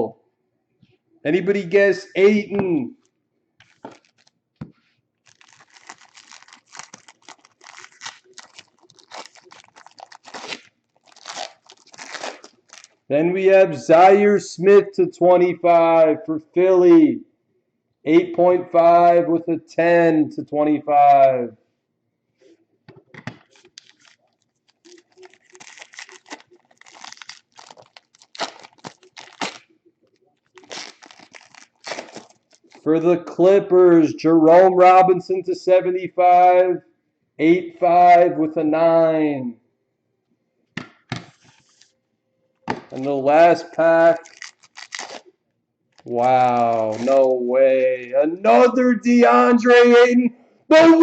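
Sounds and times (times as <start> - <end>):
plastic wrapping crinkling and tearing: 3.6 - 4.4, 5.2 - 13.0, 23.4 - 32.9, 44.0 - 45.3, 45.9 - 47.4.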